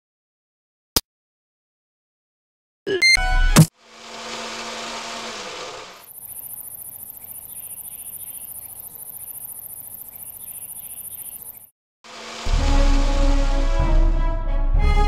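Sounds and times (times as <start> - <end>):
insects trilling: 6.0 - 11.7.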